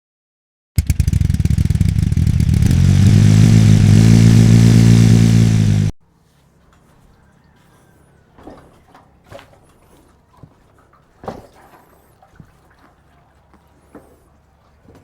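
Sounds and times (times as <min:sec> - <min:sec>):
two-stroke motorcycle engine: 0:00.8 - 0:05.9.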